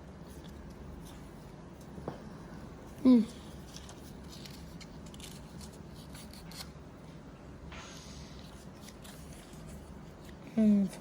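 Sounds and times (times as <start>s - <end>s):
low steady hum: 0.0s - 11.0s
paper rustling and crinkling: 3.3s - 6.8s, 7.8s - 11.0s
paper sliding rustle: 7.8s - 10.4s.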